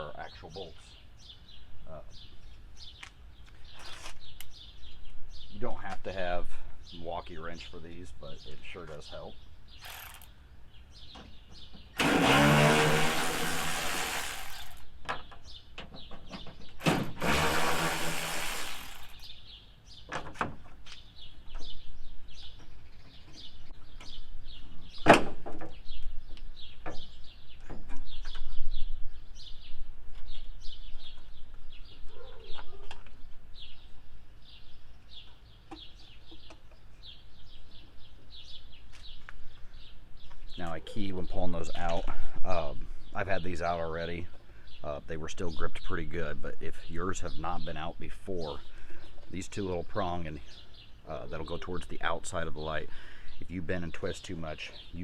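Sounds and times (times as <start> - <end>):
birds chirping: 0.0 - 55.0
powered wrench spinning bolts: 9.8 - 10.3.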